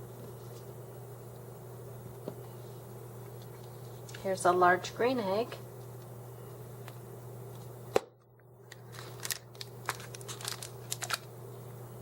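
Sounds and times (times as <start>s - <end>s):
plastic egg popping open: 8.7s - 11.3s
plastic packaging crinkling: 8.7s - 11.4s.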